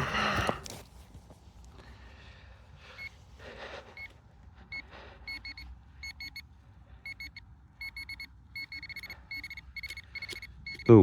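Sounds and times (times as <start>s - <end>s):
pinpointer high-pitched beeps: 7.1s - 11.0s.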